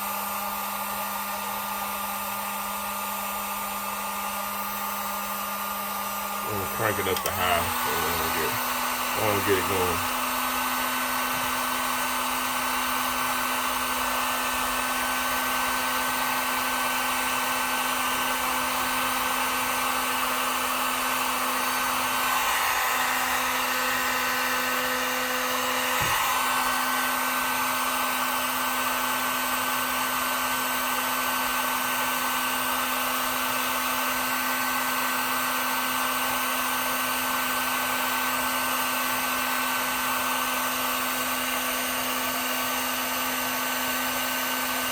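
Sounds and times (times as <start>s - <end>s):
heat gun blowing: 3.9s - 29.2s.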